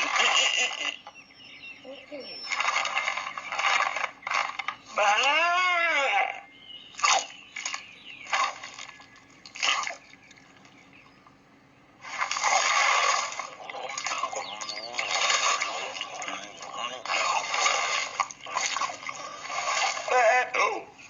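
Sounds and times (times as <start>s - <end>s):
cartoon cry bending in pitch: 5.0s - 6.4s.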